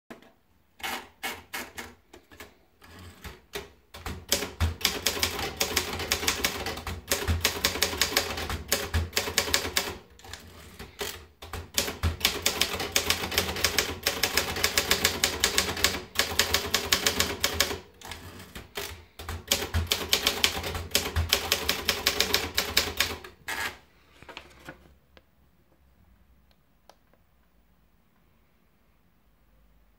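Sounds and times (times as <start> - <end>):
typewriter keys typing fast: 2.9 - 23.7.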